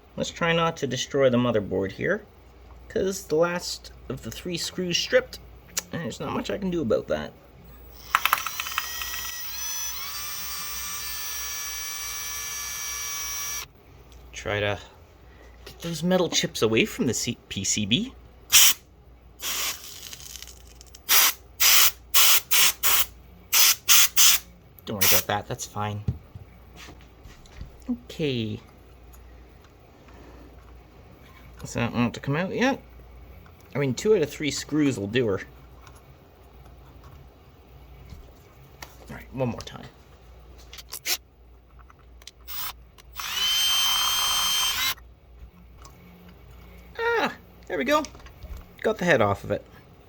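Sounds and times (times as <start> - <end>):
electric drill whining: 7.9 - 13.7, 42.5 - 45.0.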